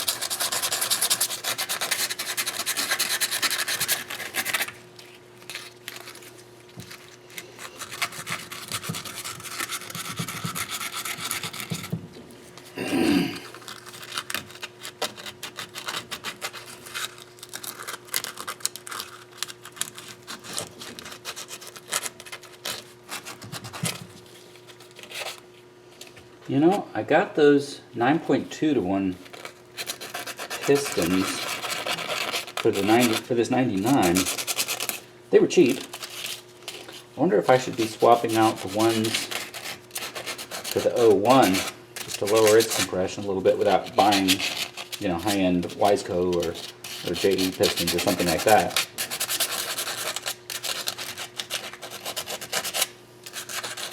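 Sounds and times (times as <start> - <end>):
hand scrubbing on metal: 0.0 - 4.5, 29.8 - 34.9, 37.4 - 53.9.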